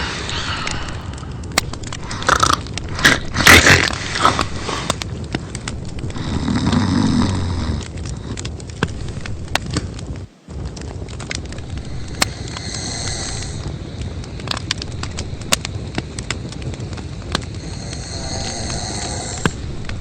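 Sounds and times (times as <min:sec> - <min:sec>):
loud snoring: 0:06.2 - 0:07.8, 0:17.6 - 0:19.6.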